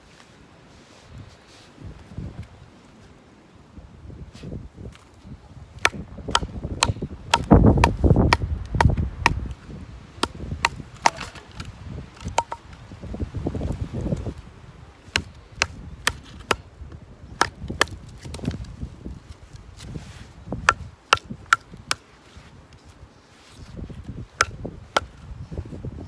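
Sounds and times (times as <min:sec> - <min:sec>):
baton striking blade in log: 0:05.8 - 0:09.6, 0:10.2 - 0:12.8, 0:15.1 - 0:16.6, 0:20.6 - 0:22.0.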